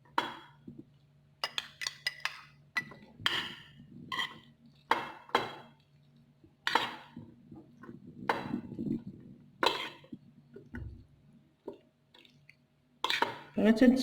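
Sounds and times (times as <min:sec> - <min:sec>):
spoon stirring salad in bowl: 0:00.2 - 0:11.0, 0:11.6 - 0:13.6.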